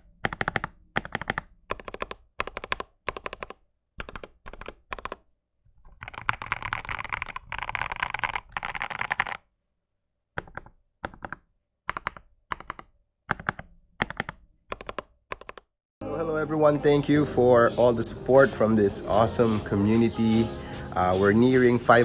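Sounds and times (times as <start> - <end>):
mechanical keyboard typing: 0.2 - 5.2, 5.9 - 9.4, 10.4 - 15.7.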